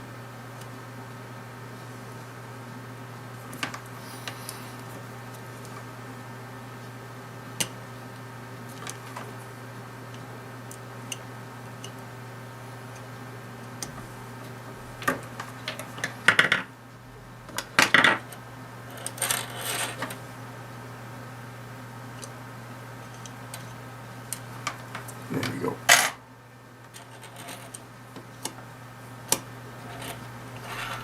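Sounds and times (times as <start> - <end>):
steady low hum: 0.0 - 31.0.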